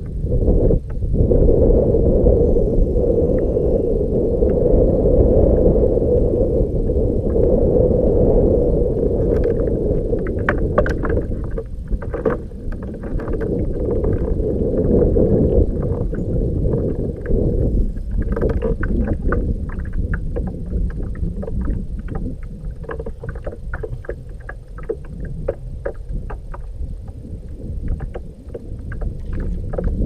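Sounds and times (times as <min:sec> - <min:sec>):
sharp clicks and knocks: 0:10.2 - 0:14.3.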